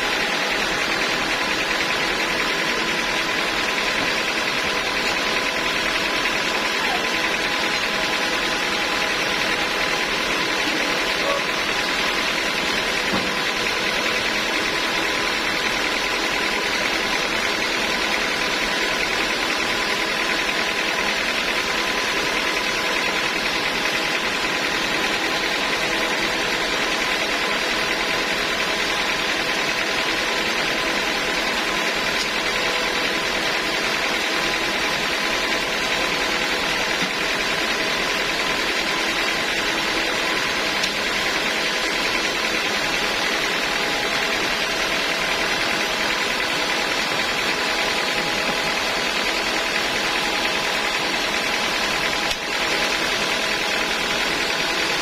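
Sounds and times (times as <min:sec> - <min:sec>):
sawmill machinery humming with whine: 0:00.0 - 0:55.0.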